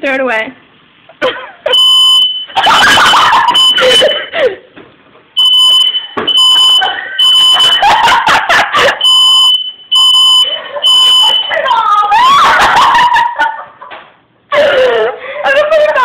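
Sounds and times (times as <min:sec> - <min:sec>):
smoke alarm beeping: 0:01.6 - 0:04.3, 0:05.4 - 0:11.8
people shrieking and shouting: 0:11.3 - 0:13.2, 0:14.5 - 0:16.0.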